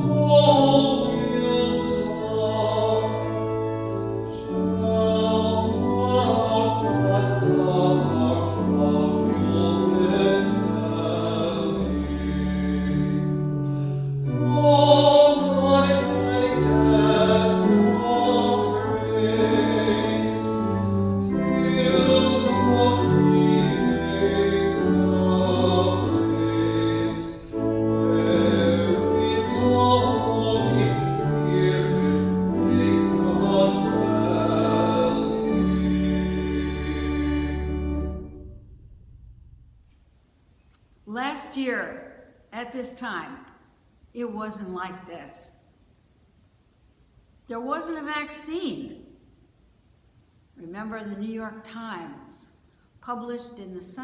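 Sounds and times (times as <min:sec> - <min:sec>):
choir singing with instruments: 0:00.0 - 0:38.4.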